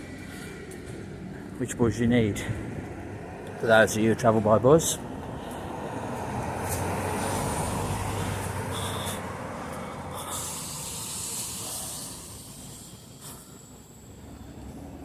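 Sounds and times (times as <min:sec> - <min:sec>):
vehicle engine humming: 0:00.0 - 0:15.0
steady hiss: 0:10.2 - 0:14.5.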